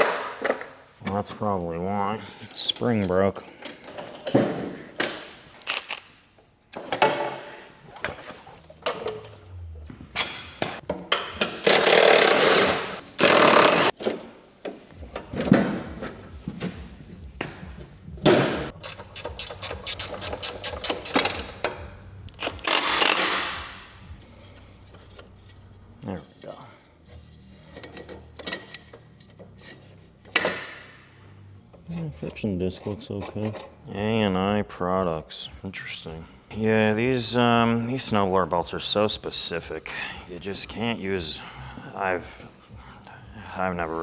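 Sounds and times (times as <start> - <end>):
metal clanks and knocks: 6.7 - 19.6.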